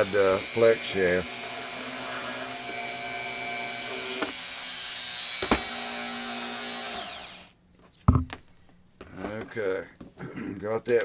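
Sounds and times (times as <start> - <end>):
rotary tool whine: 0.0 - 7.5.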